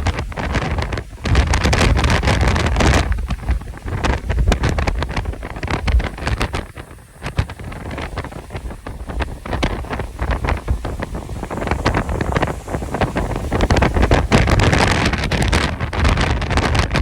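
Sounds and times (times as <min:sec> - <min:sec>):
sharp pops and crackles: 0:00.0 - 0:17.0
wind buffeting microphone: 0:00.0 - 0:17.0.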